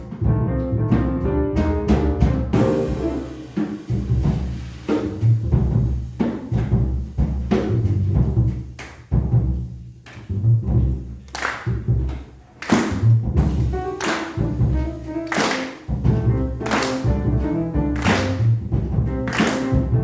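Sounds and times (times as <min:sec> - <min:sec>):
acoustic piano: 0:00.0 - 0:06.0, 0:13.4 - 0:20.0
double bass: 0:00.0 - 0:20.0
drum kit: 0:00.0 - 0:20.0
cymbal crashes: 0:02.6 - 0:05.2.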